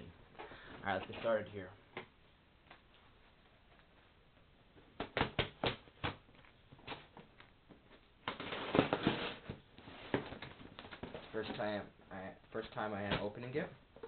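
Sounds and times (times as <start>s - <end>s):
taps and knocks on cardboard box: 5.0s - 6.2s
cardboard scraping and rustling: 8.4s - 11.4s.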